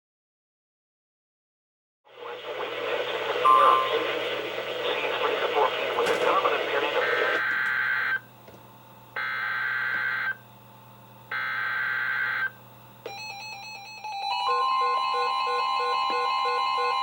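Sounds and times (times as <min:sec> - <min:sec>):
alarm beeps and chimes: 0:03.4 - 0:04.3
steady warning alarm tone: 0:03.4 - 0:08.3, 0:09.2 - 0:10.4, 0:11.3 - 0:17.0.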